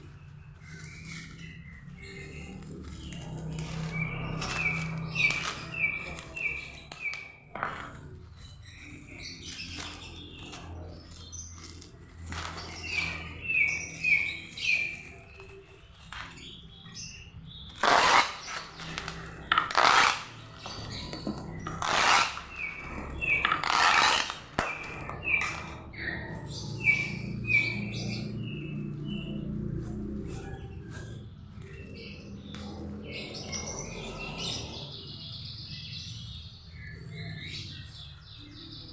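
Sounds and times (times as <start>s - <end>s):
small bird chirping: 0.0s - 29.6s, 30.2s - 38.9s
loud rasping bursts: 2.6s - 7.2s, 17.7s - 25.8s.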